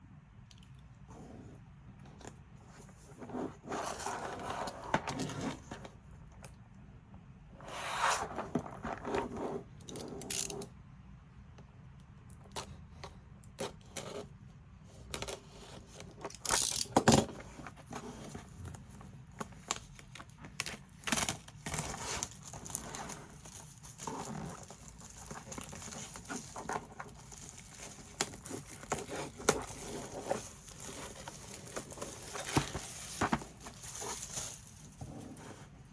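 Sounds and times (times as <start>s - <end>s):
packaging scraping and tearing: 19.4s - 35.2s.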